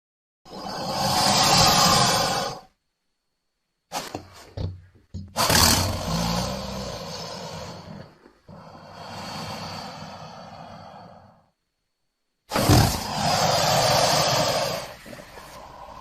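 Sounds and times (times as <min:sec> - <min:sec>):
monster roar: 0:00.5 - 0:02.7, 0:05.4 - 0:11.2, 0:12.5 - 0:16.0.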